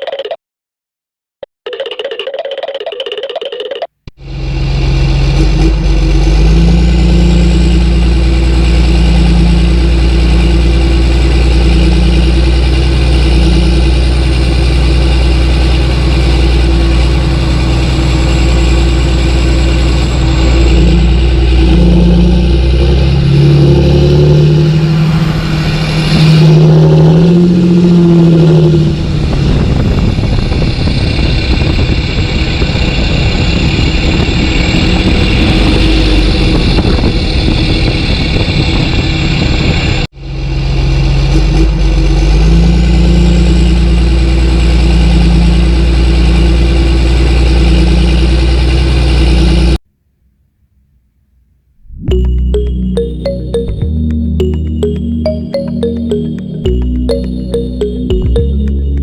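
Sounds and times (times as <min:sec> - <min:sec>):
motor running and revving: 0:04.2 - 0:38.6.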